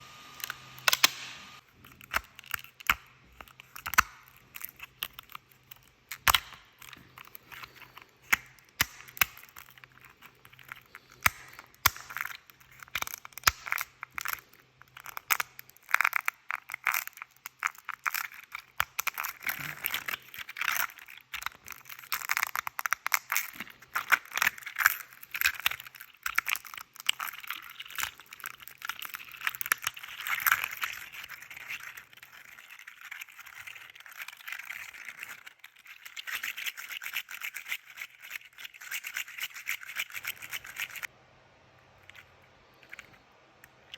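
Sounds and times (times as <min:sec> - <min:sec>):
plastic joints snapping and clicking: 0:00.4 - 0:09.9.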